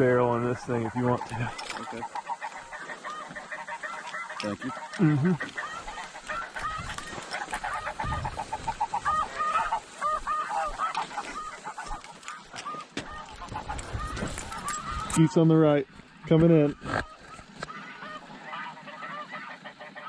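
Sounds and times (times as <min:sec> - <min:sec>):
geese honking: 0:00.0 - 0:20.0.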